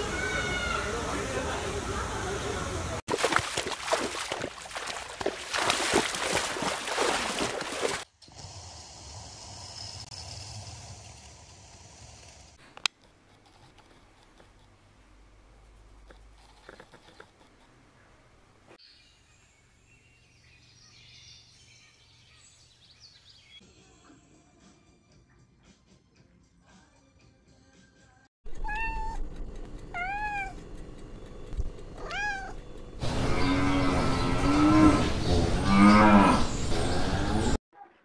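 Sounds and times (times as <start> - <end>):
cat yowling: 0.0 - 1.0, 28.6 - 29.2, 30.0 - 30.6, 32.0 - 32.6
cat meowing: 28.6 - 29.2, 29.9 - 30.6, 32.0 - 32.6.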